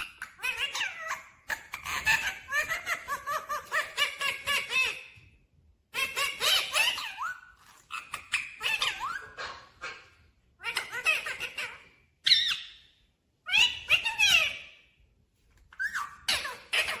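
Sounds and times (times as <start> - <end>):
parrot laughter-like calls: 0.0 - 5.2, 5.9 - 12.8, 15.8 - 17.0.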